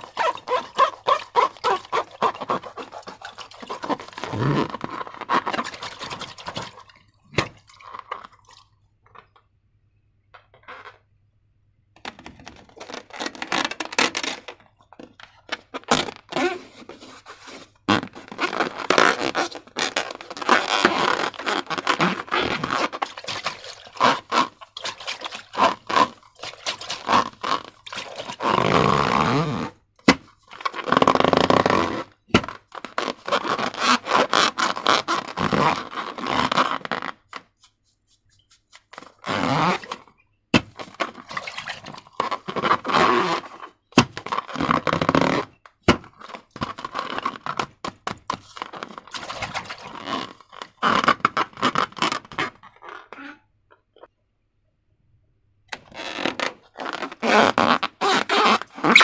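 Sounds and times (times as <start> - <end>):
slime squeezed by hand: 56.0 - 59.0.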